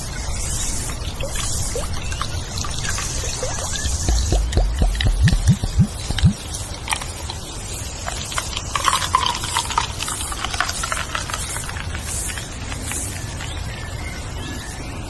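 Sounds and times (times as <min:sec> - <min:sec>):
low swooping sounds: 0:03.2 - 0:06.4
small crackling clicks: 0:04.5 - 0:13.6.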